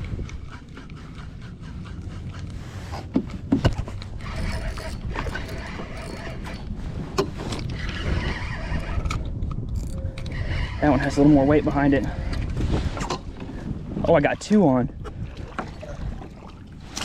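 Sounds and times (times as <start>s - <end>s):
knocks and scrapes on kayak: 0.0s - 8.2s, 12.2s - 14.3s
wind and water rumble: 0.0s - 17.0s.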